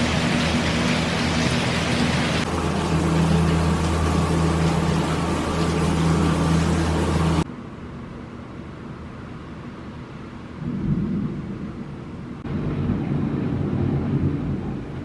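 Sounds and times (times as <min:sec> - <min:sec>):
steady rain: 0:00.0 - 0:07.4, 0:12.4 - 0:15.0
low steady hum: 0:00.0 - 0:15.0.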